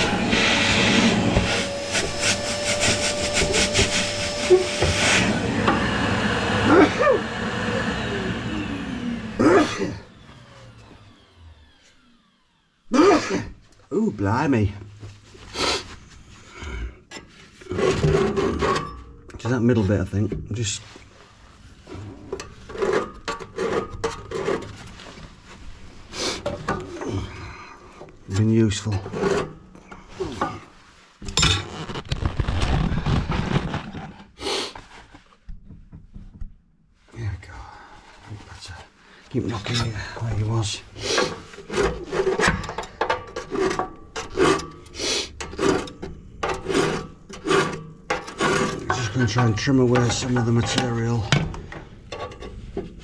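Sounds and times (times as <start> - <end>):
rasping and scraping strokes on brick: 0.0 - 5.4, 43.4 - 49.2
scraping inside a stove: 15.1 - 19.1, 20.7 - 35.5, 38.1 - 53.0.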